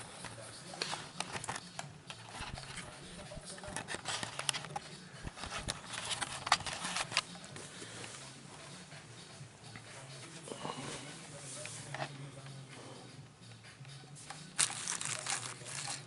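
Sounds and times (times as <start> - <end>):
plastic pieces clicking and rattling: 14.6 - 16.0.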